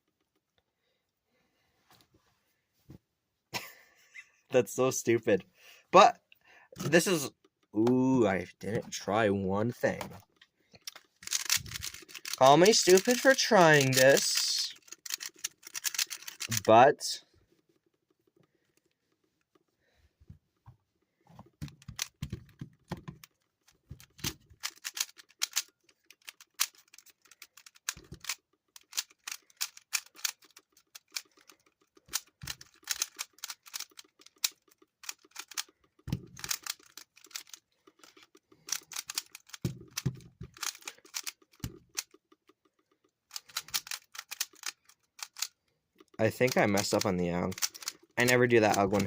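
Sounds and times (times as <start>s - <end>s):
puzzle cube plastic clicks: 9.7s - 19.6s, 21.5s - 49.0s.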